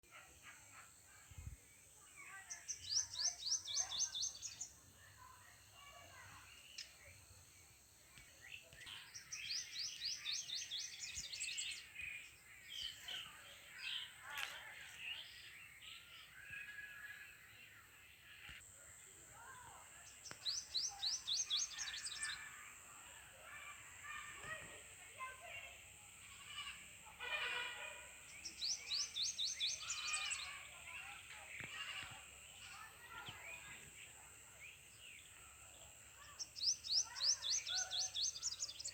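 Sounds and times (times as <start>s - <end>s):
songbird singing: 0.0s - 38.9s
other birds calling: 27.9s - 38.9s.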